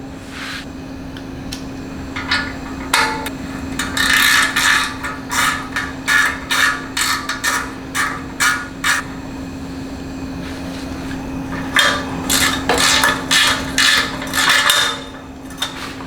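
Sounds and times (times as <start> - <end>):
steady low hum: 0.0 - 16.0
wrench clicking and scraping: 2.2 - 9.2, 11.5 - 16.0.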